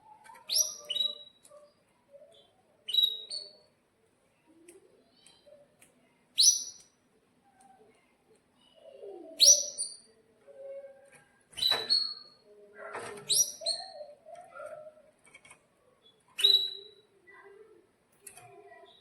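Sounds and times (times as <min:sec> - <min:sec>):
canary chirping: 0:00.3 - 0:03.8, 0:06.4 - 0:07.0, 0:09.4 - 0:10.2, 0:11.6 - 0:12.5, 0:13.2 - 0:17.4.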